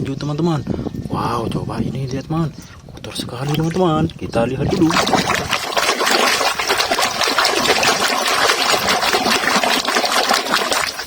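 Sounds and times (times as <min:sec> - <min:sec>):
water running and splashing: 0:04.7 - 0:11.0.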